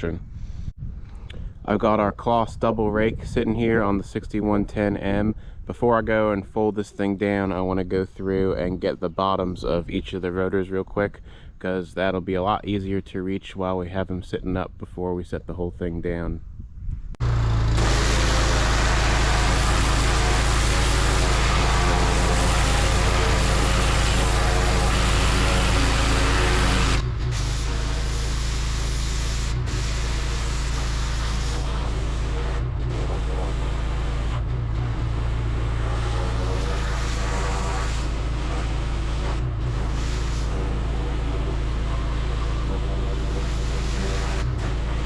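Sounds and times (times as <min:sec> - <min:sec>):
engine hum: 0:17.2 - 0:45.0
pressure washer water jet hissing: 0:17.2 - 0:45.0.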